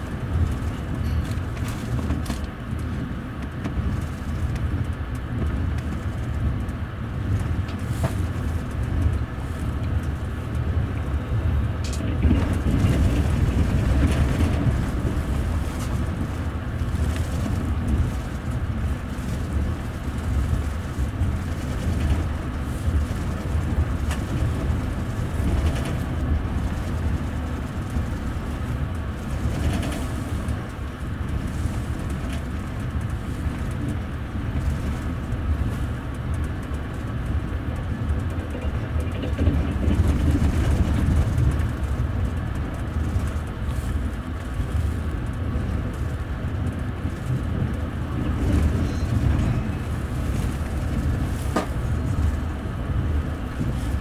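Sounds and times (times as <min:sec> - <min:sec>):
train wheels rumbling on rails: 0:00.0 - 0:54.0.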